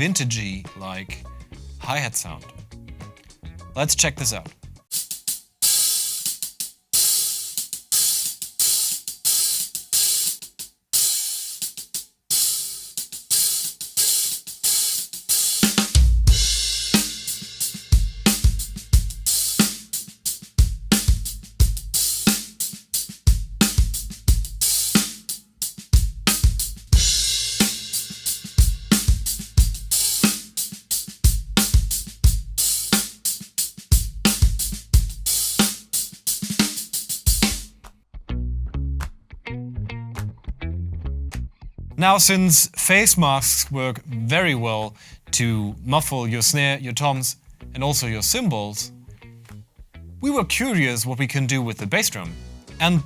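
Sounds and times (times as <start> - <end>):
snare drum: 4.2 - 37.9
muffled hi-hat strokes: 4.8 - 37.9
bass drum: 16.0 - 19.8, 20.6 - 22.3, 23.3 - 25.0, 26.0 - 30.3, 31.3 - 33.0, 33.9 - 35.6, 37.3 - 42.4.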